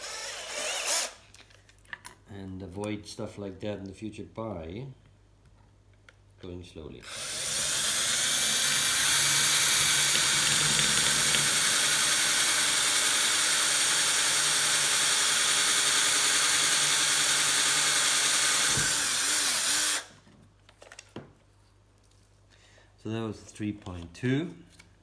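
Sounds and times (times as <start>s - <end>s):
electric drill whining: 0.0s - 1.2s, 7.0s - 20.1s.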